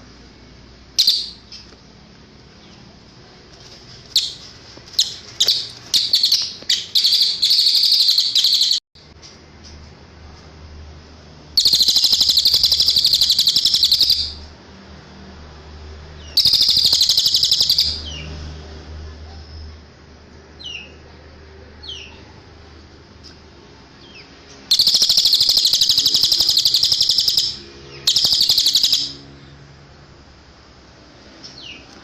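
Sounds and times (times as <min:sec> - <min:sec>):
bird chirps and trills: 0:01.0 - 0:01.7, 0:04.1 - 0:08.8, 0:11.6 - 0:14.5, 0:16.2 - 0:18.3, 0:24.0 - 0:29.6.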